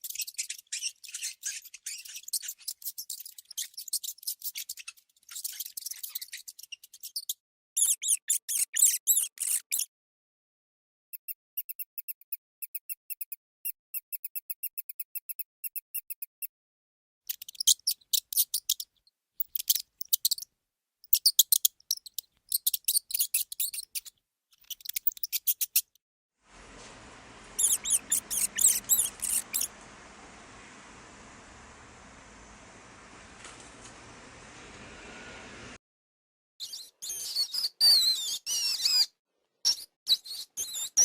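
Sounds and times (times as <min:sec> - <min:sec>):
mice squeaking: 0:00.0 - 0:09.9, 0:17.3 - 0:20.5, 0:21.1 - 0:26.0, 0:27.4 - 0:30.1, 0:36.6 - 0:39.1, 0:39.7 - 0:41.0
steady hiss: 0:26.5 - 0:35.8.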